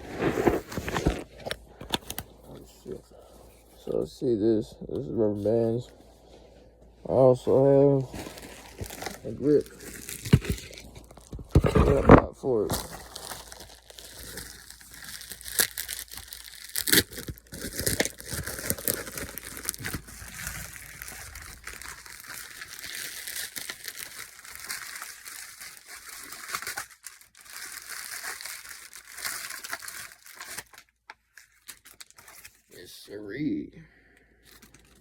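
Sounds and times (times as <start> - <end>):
packaging crinkling and tearing: 0.1 - 3.0, 7.8 - 32.7, 34.5 - 35.0.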